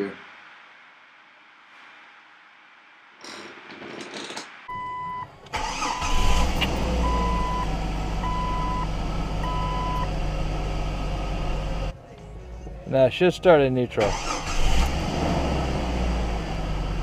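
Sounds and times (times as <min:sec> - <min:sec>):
car engine cranking and idling: 0:04.8 - 0:11.9, 0:14.0 - 0:17.0.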